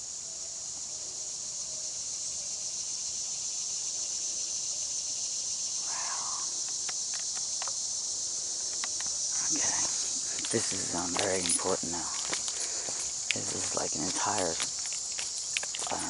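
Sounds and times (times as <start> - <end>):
insects droning: 0.0 - 16.0
light clicks: 6.6 - 7.8.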